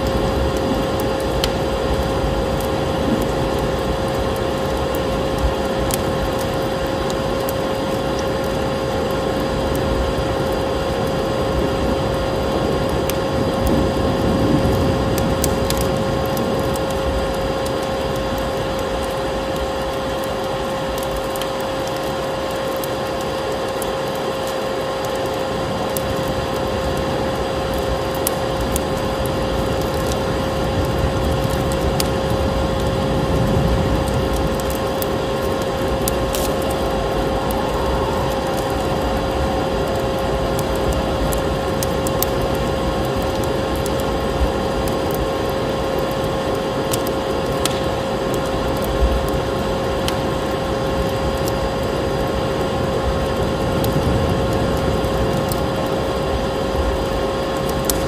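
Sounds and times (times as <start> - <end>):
wood fire crackling: 0.0 - 58.0
vacuum cleaner whine: 32.1 - 47.4.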